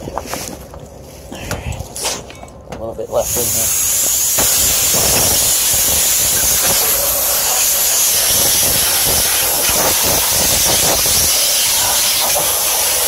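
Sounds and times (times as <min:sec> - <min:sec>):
loud hiss of gas from nozzle: 0:03.2 - 0:13.0.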